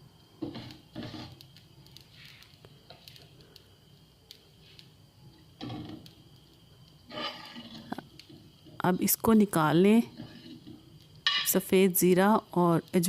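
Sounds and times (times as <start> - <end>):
spoon scraping seeds in pan: 0.4 - 3.3, 7.0 - 11.6
faint clicks: 1.4 - 4.9.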